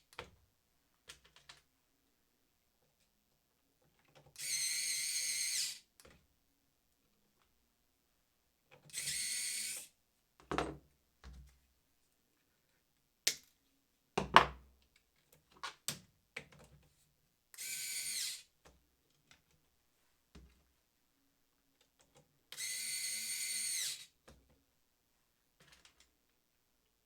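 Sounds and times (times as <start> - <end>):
cordless screwdriver whining: 4.4 - 5.8, 8.9 - 9.9, 17.6 - 18.5, 22.6 - 24.1.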